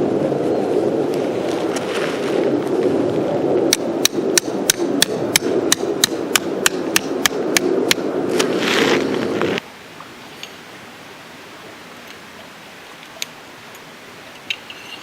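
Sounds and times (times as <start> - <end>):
low background rumble: 0.0 - 9.6.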